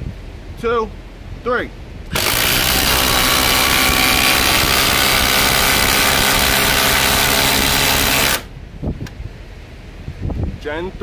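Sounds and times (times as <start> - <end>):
impact drivers hammering: 2.1 - 8.5.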